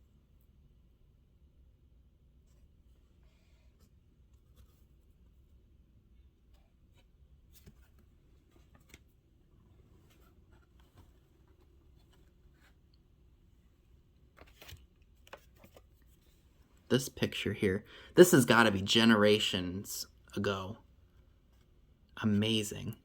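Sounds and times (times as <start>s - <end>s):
low room hum: 0.0s - 23.0s
photographs and cards rustling: 6.4s - 17.6s.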